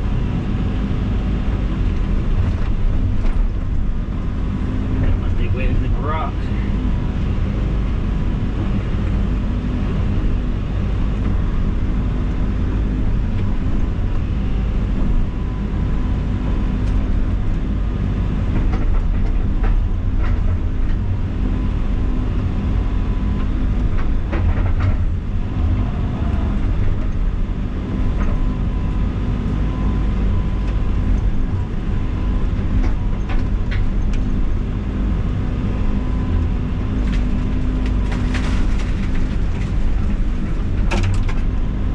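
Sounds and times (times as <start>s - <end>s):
diesel engine under load: 0.0s - 41.9s
knocks and clatter: 18.5s - 21.1s, 23.4s - 27.3s, 37.0s - 41.6s.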